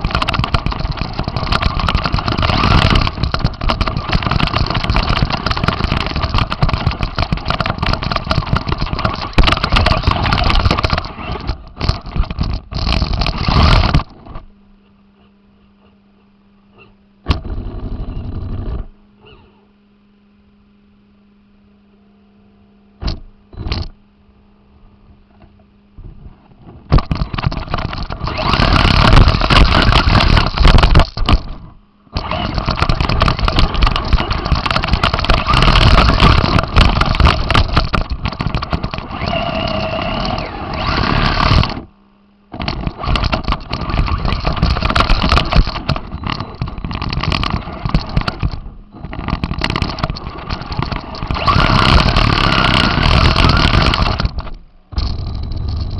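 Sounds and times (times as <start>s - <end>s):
rc car rattling drive noise: 0.0s - 19.6s, 26.6s - 41.9s, 42.5s - 55.9s
faint steady hum: 0.0s - 55.9s.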